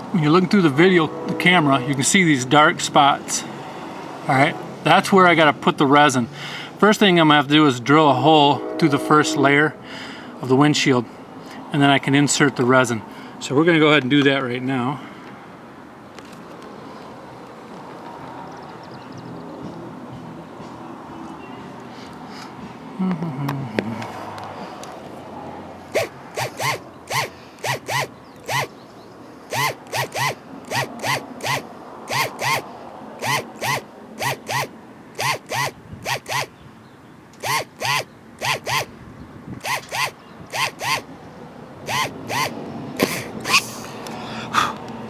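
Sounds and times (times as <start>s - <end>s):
electric drill whirring: 25.9s - 28.7s, 29.5s - 36.5s, 37.4s - 38.9s, 39.6s - 41.1s, 41.9s - 43.8s.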